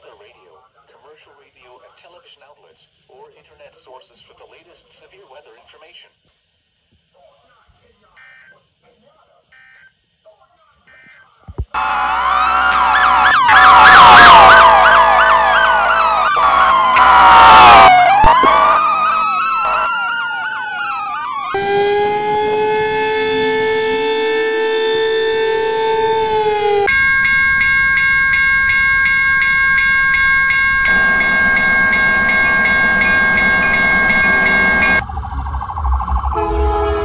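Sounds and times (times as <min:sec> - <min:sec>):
high alarm tone with clicking pulse: 0:11.8 - 0:37.0
sirens wailing: 0:11.8 - 0:37.0
steady horn-like chord: 0:21.6 - 0:26.9, 0:36.4 - 0:37.0.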